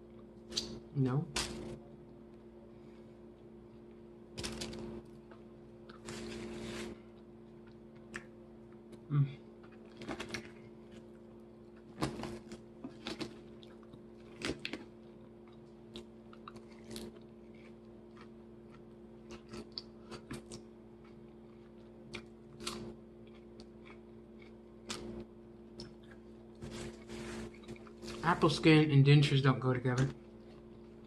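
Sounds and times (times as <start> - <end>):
steady low hum: 0.0 - 31.0
person chewing crunchy salad: 9.6 - 28.3.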